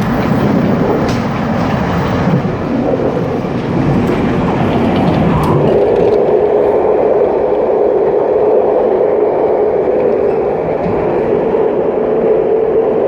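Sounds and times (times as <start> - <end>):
steady drone: 0.0 - 13.0
train wheels rumbling on track: 0.0 - 13.0.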